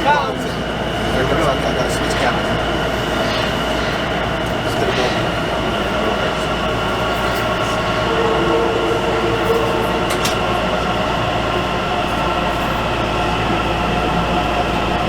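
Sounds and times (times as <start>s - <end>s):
electric train hum and rumble: 0.0s - 15.0s.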